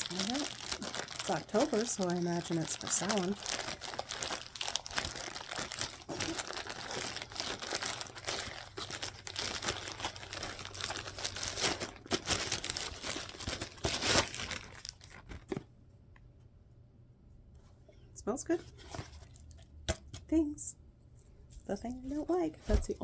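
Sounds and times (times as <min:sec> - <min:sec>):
packaging crinkling and tearing: 0:00.0 - 0:15.6.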